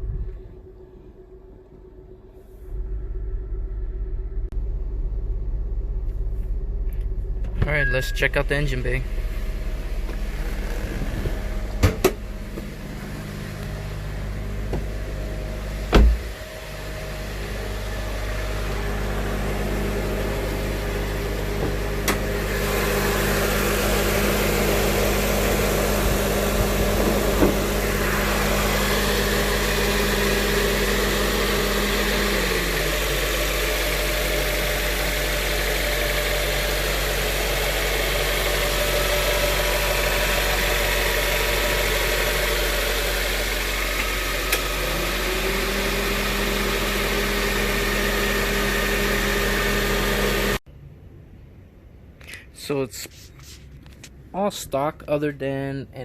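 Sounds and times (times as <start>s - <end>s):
car engine idling: 0.0s - 50.8s
loud thump: 10.0s - 13.1s, 14.6s - 15.1s, 15.9s - 16.4s, 26.9s - 28.1s.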